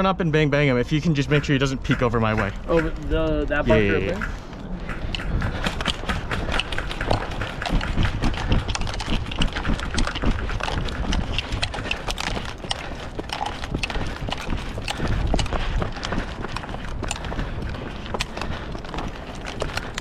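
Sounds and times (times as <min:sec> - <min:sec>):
running footsteps thudding: 0:01.0 - 0:20.0
sharp clicks: 0:04.1 - 0:20.0.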